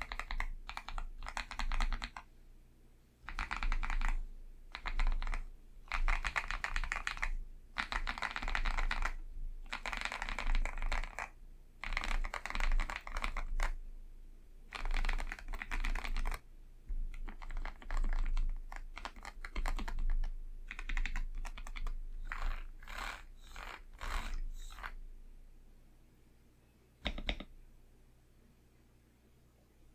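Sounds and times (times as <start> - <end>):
mechanical keyboard typing: 0.0 - 2.3, 3.2 - 13.8, 14.7 - 16.4, 17.1 - 25.0, 27.0 - 27.5.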